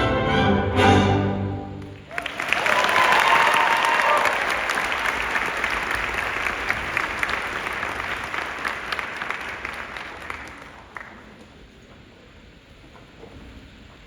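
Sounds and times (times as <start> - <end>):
audience applauding: 1.8 - 11.5.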